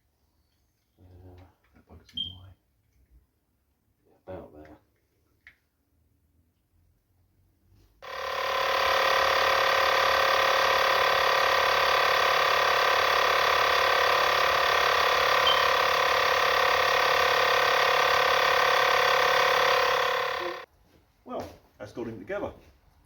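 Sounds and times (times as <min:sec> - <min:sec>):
loud steady machine hum: 0:08.0 - 0:20.7.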